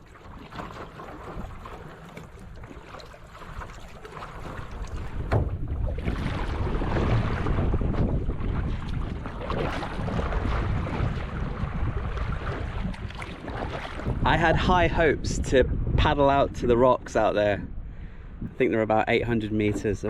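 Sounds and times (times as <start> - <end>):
water splashing around kayak: 0.0 - 20.0
wind buffeting microphone: 4.4 - 20.0.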